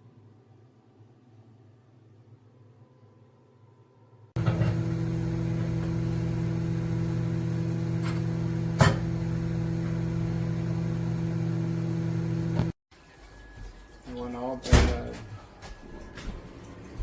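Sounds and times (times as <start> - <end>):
microwave oven humming: 4.4 - 12.8.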